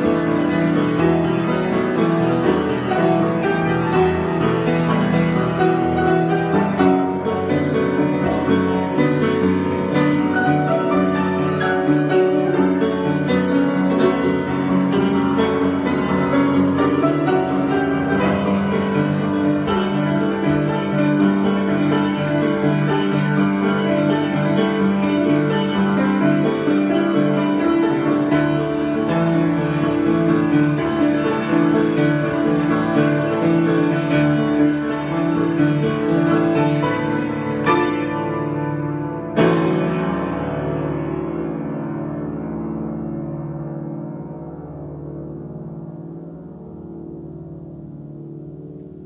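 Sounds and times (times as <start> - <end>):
piano chords and melody: 0.0 - 49.0.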